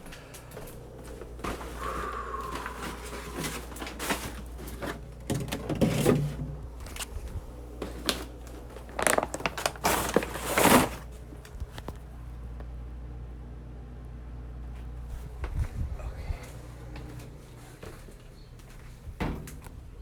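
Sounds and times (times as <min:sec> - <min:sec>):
rustling and crinkling: 0:00.0 - 0:12.8
steady low hum: 0:00.0 - 0:20.0.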